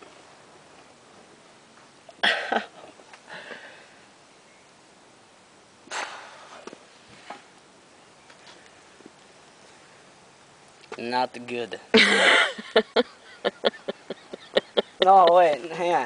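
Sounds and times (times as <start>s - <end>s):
sharp breathy exhalations: 5.9s - 6.6s.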